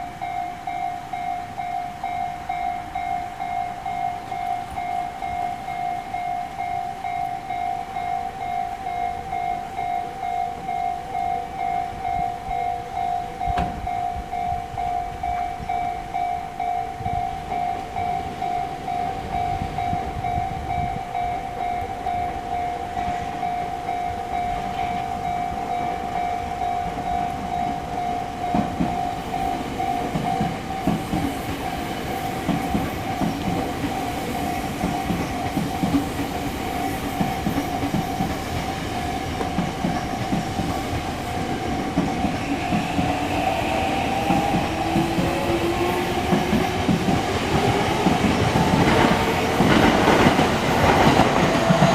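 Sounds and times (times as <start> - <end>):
level crossing alarm dinging: 0.0 - 51.9
train rumbling: 0.0 - 51.9
wheels clacking over rail joints: 24.1 - 51.9.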